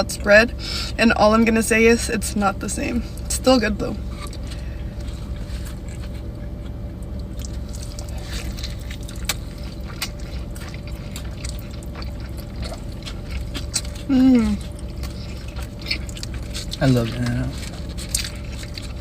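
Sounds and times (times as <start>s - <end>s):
steady low hum: 0.0s - 19.0s
person chewing food: 4.0s - 19.0s.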